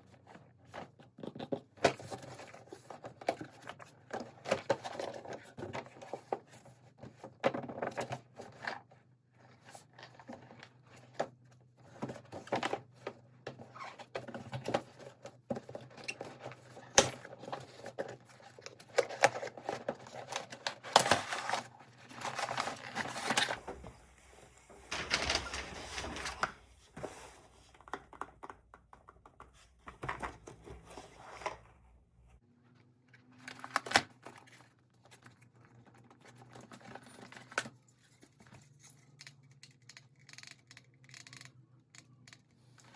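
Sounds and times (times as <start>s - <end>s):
packaging rustling and crinkling: 15.6s - 27.8s.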